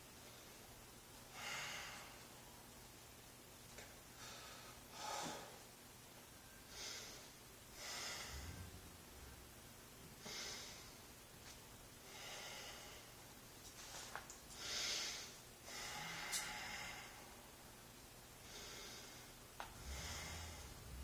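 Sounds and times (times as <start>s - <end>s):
faint slow breathing: 4.1s - 5.7s, 6.6s - 11.1s, 12.0s - 13.2s, 14.6s - 17.6s, 18.4s - 21.0s.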